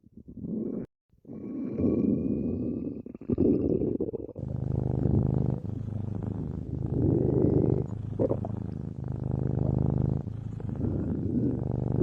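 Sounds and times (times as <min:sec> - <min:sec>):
stomach growling: 0:00.0 - 0:12.0.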